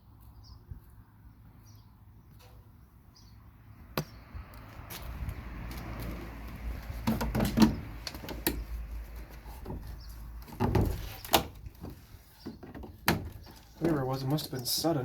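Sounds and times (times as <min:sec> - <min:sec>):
wooden knocks clicks and scrapes: 0:05.7 - 0:14.6.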